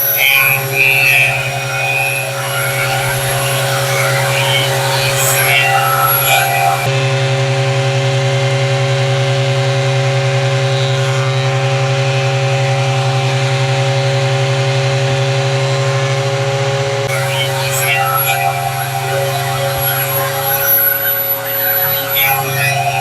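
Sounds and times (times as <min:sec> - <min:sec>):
electric wood planer running: 0:00.0 - 0:23.0.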